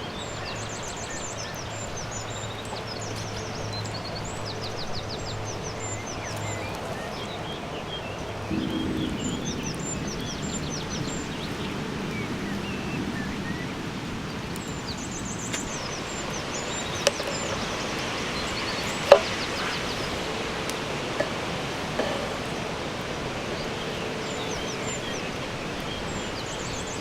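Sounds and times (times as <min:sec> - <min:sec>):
small birds chirping: 0:00.0 - 0:20.4.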